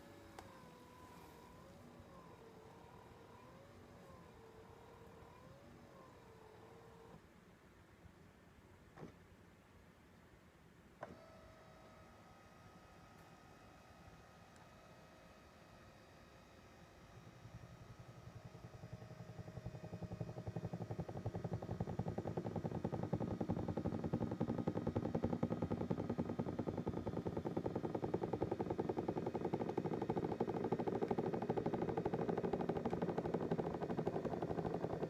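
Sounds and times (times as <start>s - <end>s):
massage seat rattling: 17.6s - 35.0s.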